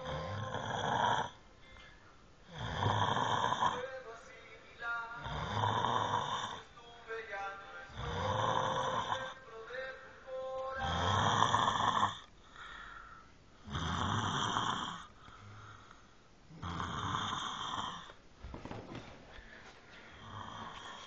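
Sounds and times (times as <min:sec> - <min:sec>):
person snoring heavily: 0:00.0 - 0:01.4, 0:02.4 - 0:03.8, 0:05.2 - 0:06.7, 0:07.9 - 0:09.4, 0:10.8 - 0:13.0, 0:13.6 - 0:15.9, 0:16.5 - 0:18.2, 0:20.1 - 0:21.0
quiet breathing: 0:07.8 - 0:18.2, 0:19.0 - 0:21.0.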